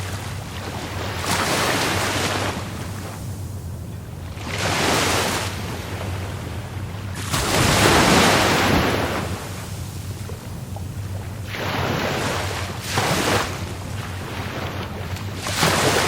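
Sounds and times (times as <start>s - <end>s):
waves breaking and washing in: 0.0s - 16.0s.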